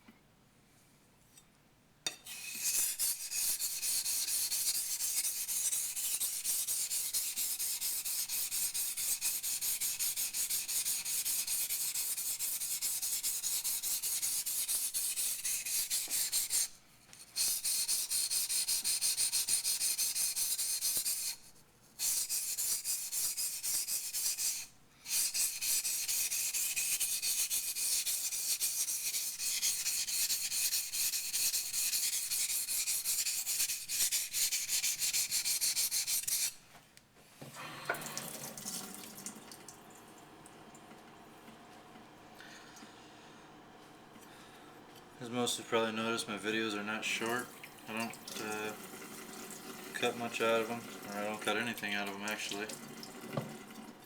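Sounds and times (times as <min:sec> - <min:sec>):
blade scraping on wet whetstone: 0:02.1 - 0:36.6.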